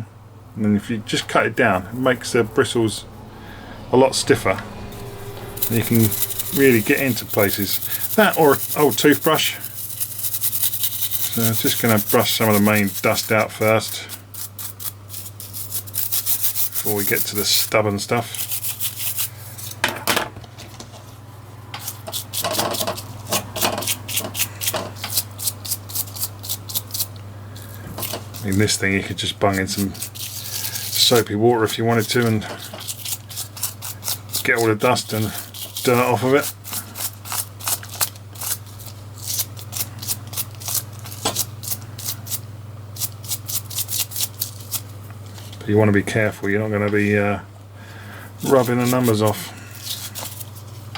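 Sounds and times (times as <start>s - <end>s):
scratchy brush strokes: 1.6s - 19.8s, 29.5s - 42.4s, 48.4s - 50.8s
paintbrush scrubbing rubber buttons: 5.5s - 19.8s, 29.4s - 42.4s, 48.4s - 50.8s.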